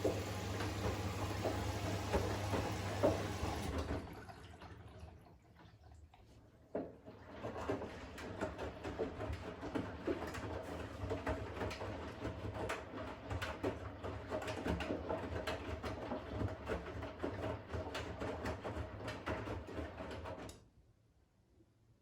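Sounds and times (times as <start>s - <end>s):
washing machine motor hum: 0.0s - 5.9s.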